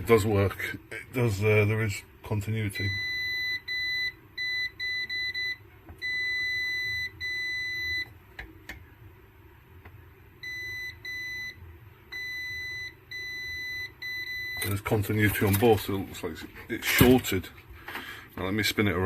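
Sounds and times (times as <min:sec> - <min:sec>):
multimeter continuity beep: 0:02.8 - 0:08.1, 0:10.4 - 0:14.8.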